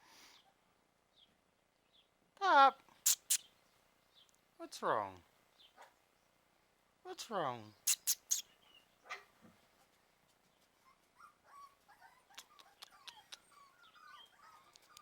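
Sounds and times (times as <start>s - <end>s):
puppies whimpering: 10.8s - 15.0s.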